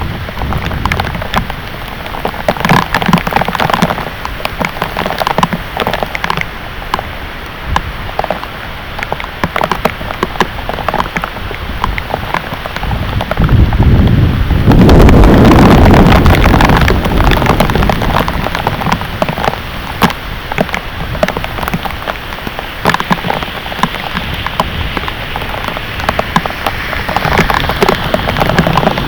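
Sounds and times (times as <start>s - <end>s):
heavy rain pouring: 0.0s - 29.0s
low rumble: 13.0s - 19.0s.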